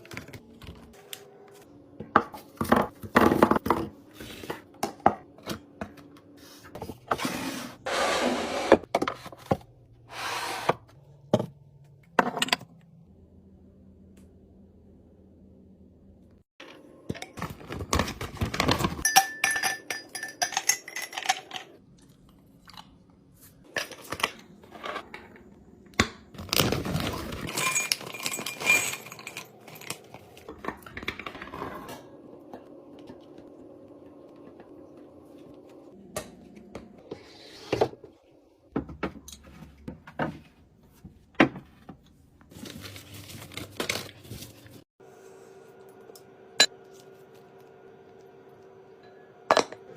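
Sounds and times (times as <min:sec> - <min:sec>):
plastic wrappers crinkling and tearing: 0:42.5 - 0:44.8.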